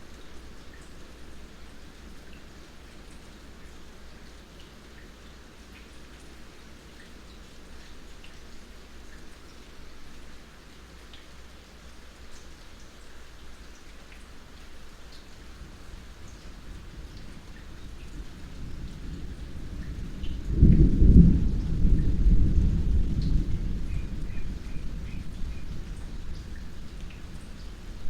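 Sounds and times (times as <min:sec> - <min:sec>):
light rain falling: 0:00.0 - 0:28.0
water drips: 0:00.0 - 0:28.0
distant thunder rumble: 0:16.5 - 0:28.0.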